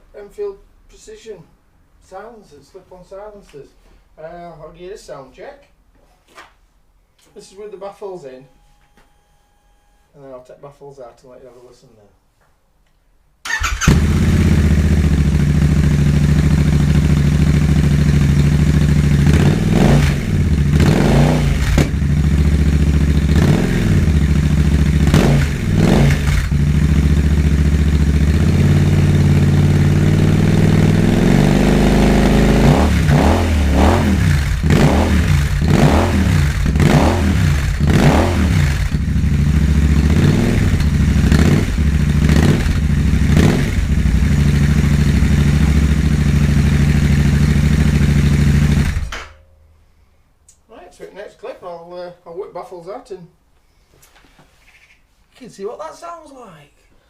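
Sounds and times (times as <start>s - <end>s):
motorcycle engine idling and revving: 13.5s - 49.4s.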